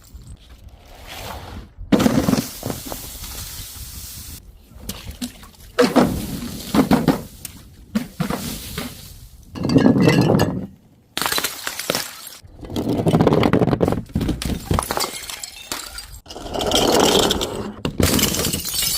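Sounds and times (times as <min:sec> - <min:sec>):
glass clatter: 0:09.6 - 0:10.7, 0:18.0 - 0:18.9
glass bottles shattering: 0:09.6 - 0:12.4, 0:14.6 - 0:16.7, 0:18.0 - 0:18.9.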